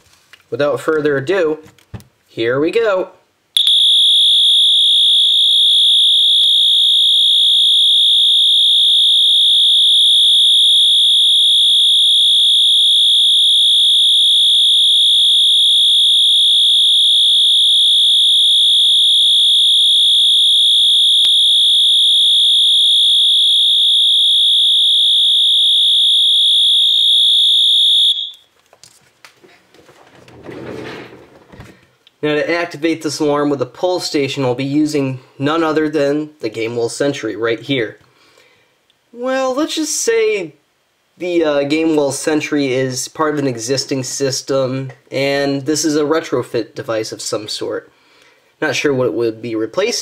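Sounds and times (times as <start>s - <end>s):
fire alarm horn tone: 3.6s - 28.4s.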